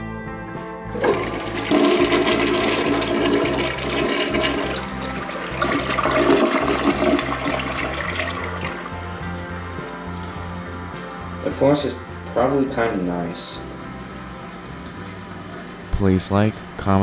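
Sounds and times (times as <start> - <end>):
toilet flushing: 0.9 - 11.5.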